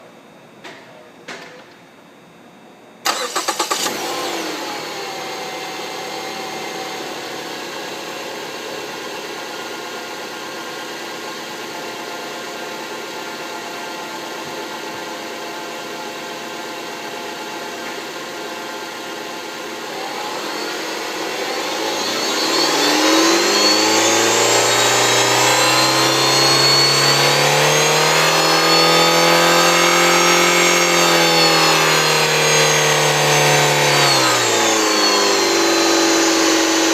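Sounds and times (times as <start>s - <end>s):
car engine starting and idling: 3.0s - 8.0s
engine revving: 3.1s - 7.0s, 19.8s - 36.9s
alternator whine: 17.6s - 36.9s.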